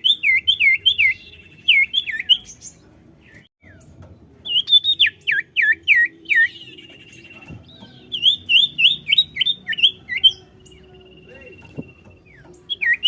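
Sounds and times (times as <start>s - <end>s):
bird singing whistled notes: 0.0s - 13.0s.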